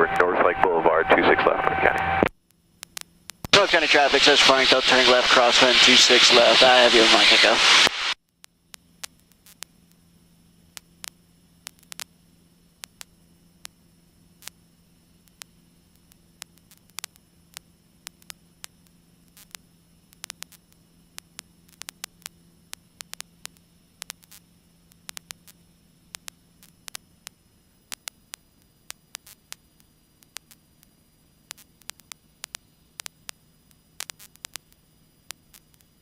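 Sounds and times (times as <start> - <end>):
radio static hum: 0.0 - 36.0
sharp clicks and crackles: 2.3 - 3.6, 7.8 - 10.0, 10.7 - 12.1, 12.8 - 13.8, 15.2 - 36.0.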